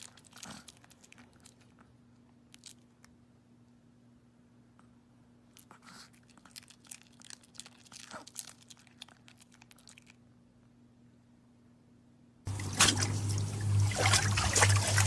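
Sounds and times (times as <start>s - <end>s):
steady low hum: 10.2s - 15.0s.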